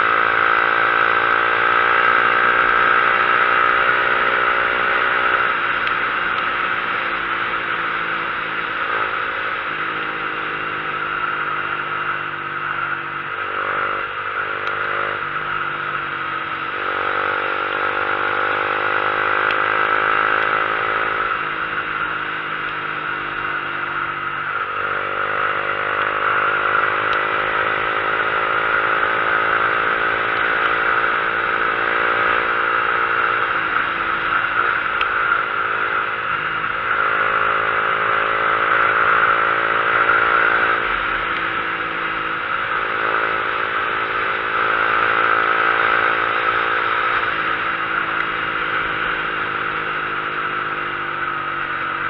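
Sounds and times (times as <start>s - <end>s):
motorcycle engine shifting gears: 0.0s - 52.0s.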